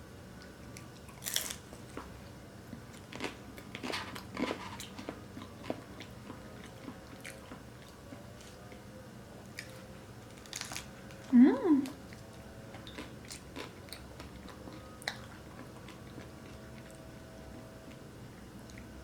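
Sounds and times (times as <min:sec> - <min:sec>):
crisp taco shell crunching: 0:01.0 - 0:02.1, 0:09.5 - 0:11.2.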